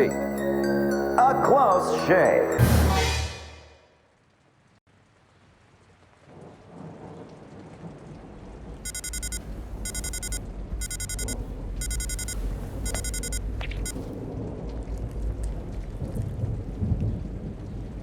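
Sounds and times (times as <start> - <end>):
beeping tone: 8.9 - 14.0.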